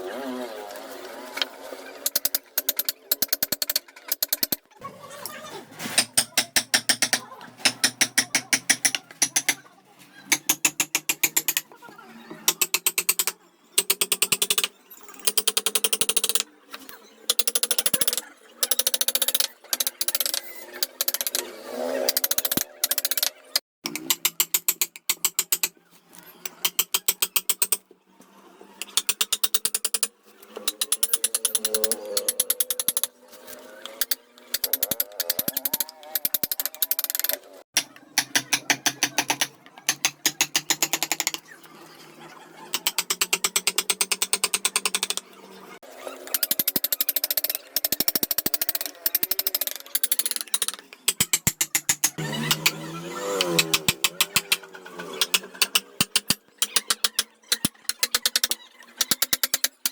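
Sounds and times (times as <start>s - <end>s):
mallet tapping chisel: 2.0s - 4.6s, 6.0s - 9.6s, 10.3s - 11.6s, 12.5s - 16.5s, 17.3s - 21.4s, 22.0s - 25.8s, 26.5s - 27.8s, 28.8s - 33.1s, 34.0s - 41.4s, 42.7s - 45.2s, 46.3s - 52.8s, 53.4s - 54.6s, 55.2s - 59.9s
rapid sharp clicks: 55.2s - 59.9s.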